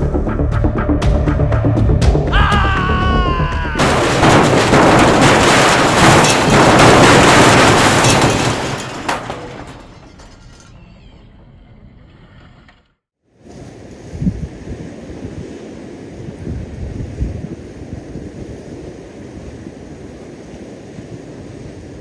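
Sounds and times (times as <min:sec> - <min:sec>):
background music: 0:00.0 - 0:03.8.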